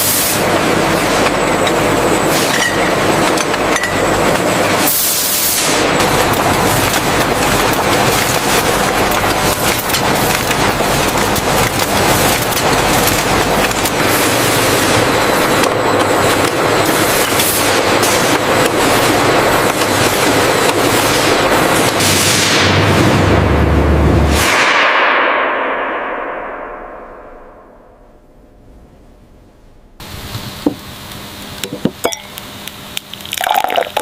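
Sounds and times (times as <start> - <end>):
machinery hum: 0.0 - 34.0
machinery clattering: 0.4 - 4.9, 5.7 - 23.7.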